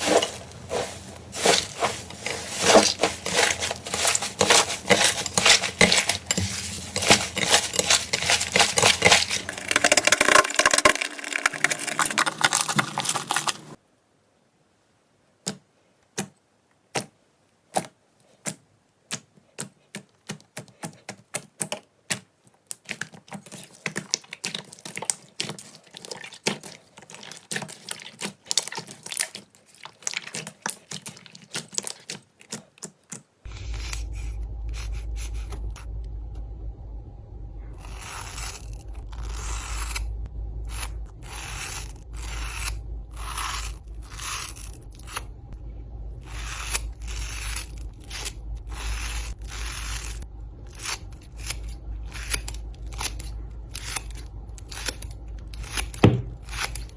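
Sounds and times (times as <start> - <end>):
slime scraping strokes: 0.0 - 13.8, 22.9 - 35.9, 37.8 - 45.3, 46.2 - 56.9
steady low hum: 0.0 - 13.8, 33.5 - 56.9
slime crackling and popping: 7.0 - 13.8.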